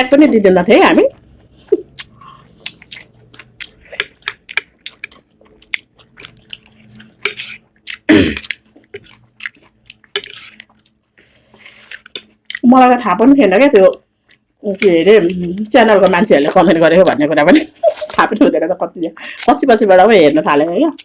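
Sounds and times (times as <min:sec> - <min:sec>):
person chewing: 0:01.2 - 0:12.6, 0:14.0 - 0:14.6.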